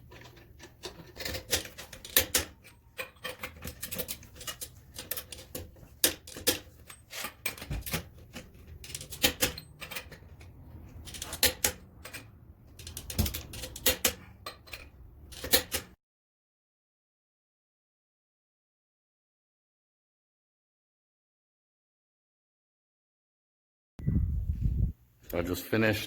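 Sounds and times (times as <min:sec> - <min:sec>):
hand tools clicking and tapping: 0:00.0 - 0:16.0.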